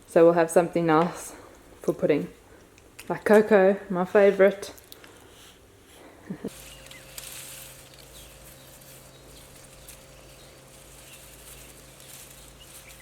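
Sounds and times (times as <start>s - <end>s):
steady hiss: 5.0s - 13.0s
faint bird chirps: 6.5s - 13.0s.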